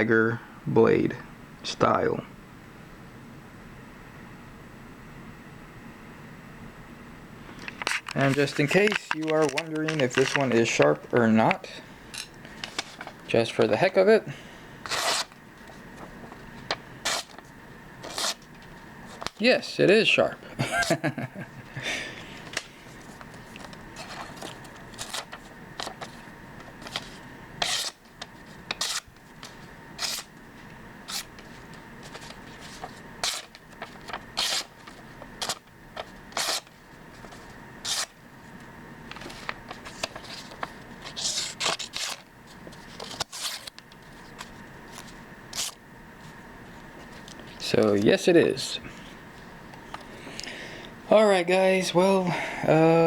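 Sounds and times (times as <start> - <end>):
knife blade cutting strokes: 27.6 - 28.0, 28.8 - 29.0, 30.0 - 30.3, 37.8 - 38.1.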